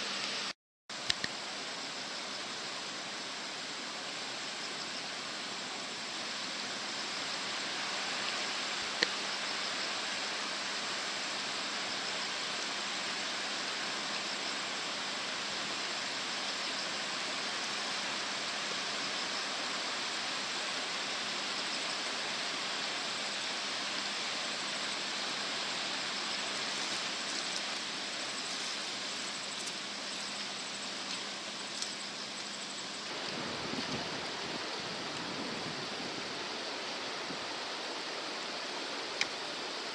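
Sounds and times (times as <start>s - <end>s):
faint click: 1.0s - 1.4s.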